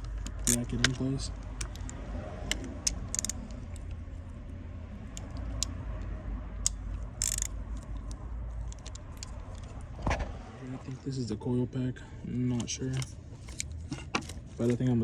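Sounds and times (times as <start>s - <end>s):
ratchet wrench clicking: 0.0s - 4.0s, 5.1s - 9.8s.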